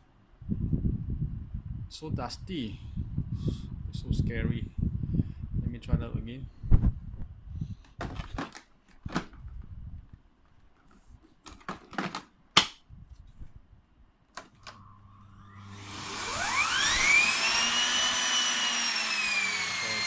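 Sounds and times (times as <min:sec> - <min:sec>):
vacuum cleaner motor whine: 0:14.7 - 0:20.0.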